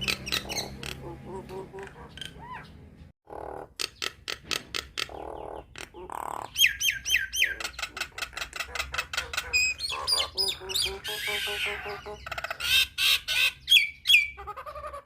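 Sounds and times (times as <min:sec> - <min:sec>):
bird clicks and harsh rasps: 0:03.7 - 0:10.3.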